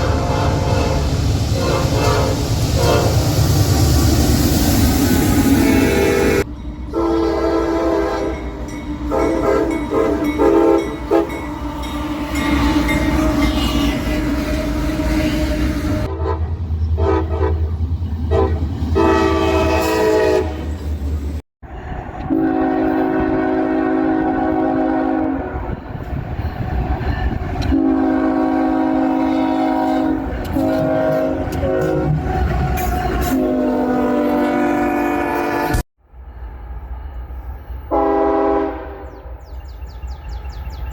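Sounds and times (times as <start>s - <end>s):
locomotive air horn blasts: 0.0s - 3.4s, 5.3s - 17.7s, 18.3s - 20.8s, 22.2s - 25.8s, 27.6s - 35.8s, 37.9s - 39.3s
low rumble of train: 0.0s - 40.9s.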